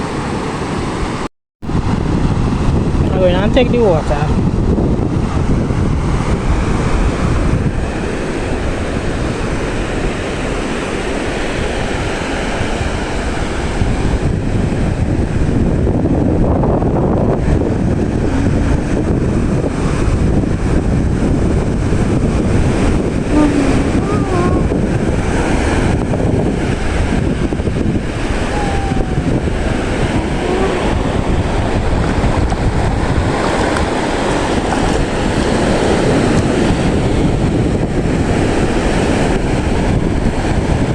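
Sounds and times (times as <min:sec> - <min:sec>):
waves washing onto beach: 0:00.0 - 0:40.9
wind buffeting microphone: 0:00.0 - 0:40.9.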